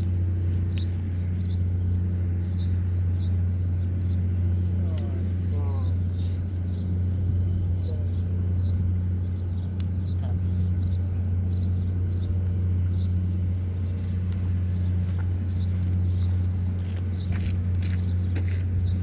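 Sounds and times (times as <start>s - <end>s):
low machine hum: 0.0s - 19.0s
bird chirps: 5.8s - 19.0s.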